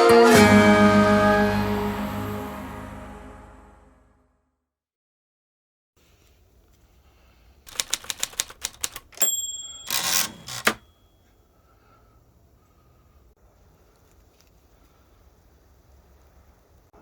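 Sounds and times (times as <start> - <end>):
sharp clicks: 7.7 - 9.3, 9.9 - 10.8.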